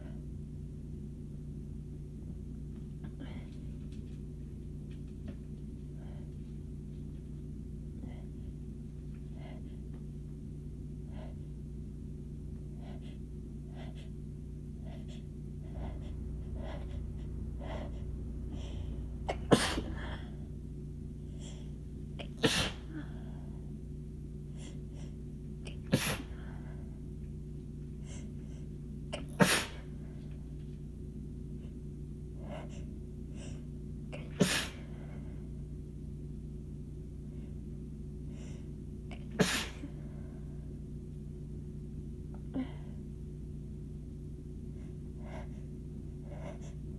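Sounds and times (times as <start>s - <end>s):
woman sneezing: 22.2s - 23.1s, 25.8s - 26.3s, 29.2s - 29.9s, 34.2s - 34.9s, 39.2s - 39.9s.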